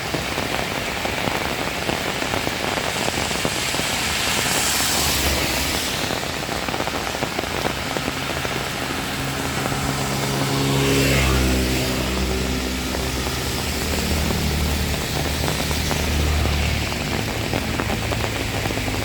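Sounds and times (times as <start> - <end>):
heavy rain: 0.0 - 19.0
vehicle engine: 0.3 - 19.0.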